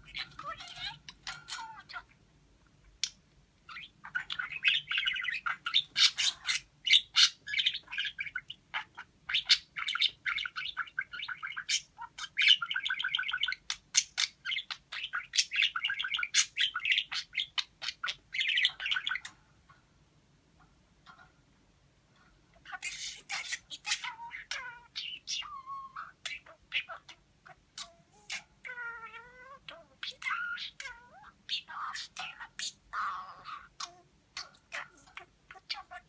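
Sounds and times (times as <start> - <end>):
parakeet clicks and squawks: 0.0 - 2.1, 22.6 - 36.0
parakeet chattering and warbling: 0.0 - 2.2, 2.8 - 19.8, 20.7 - 21.5, 22.1 - 36.0.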